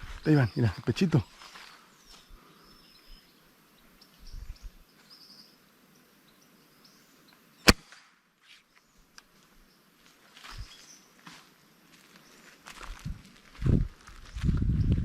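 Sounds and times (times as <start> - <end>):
air rifle shot: 7.6 - 8.2.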